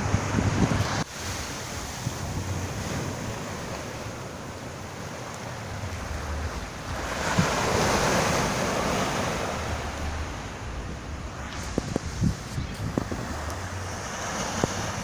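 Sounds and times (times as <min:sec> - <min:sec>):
surf washing onto beach: 0:00.0 - 0:15.0
wind buffeting microphone: 0:00.0 - 0:15.0.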